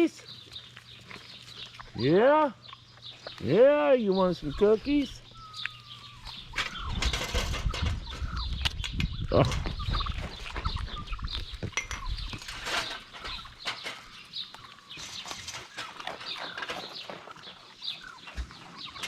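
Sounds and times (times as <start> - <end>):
fowl clucking: 9.4 - 11.4.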